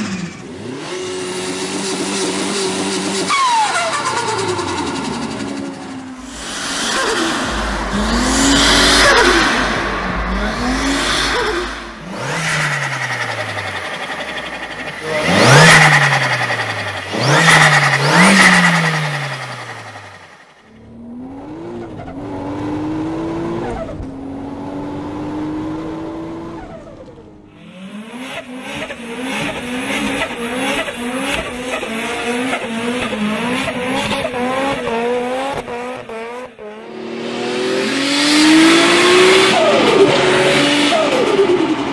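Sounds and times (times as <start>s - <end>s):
turbocharged car engines revving: 0.0s - 41.9s
fluttering turbo chatter: 6.2s - 20.4s.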